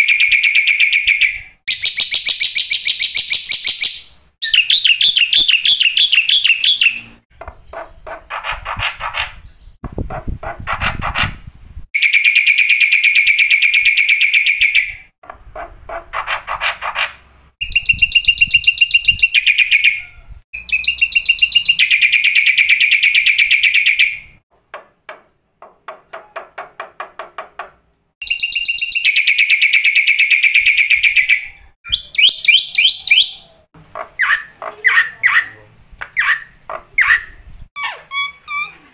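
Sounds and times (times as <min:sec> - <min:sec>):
bird trilling: 0:00.1 - 0:09.8, 0:16.2 - 0:24.3, 0:28.2 - 0:38.9.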